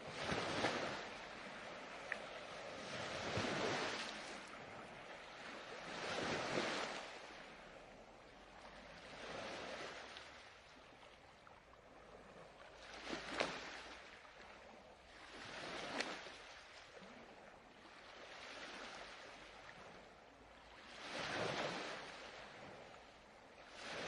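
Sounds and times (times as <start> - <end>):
ocean waves washing in: 0.0 - 11.4.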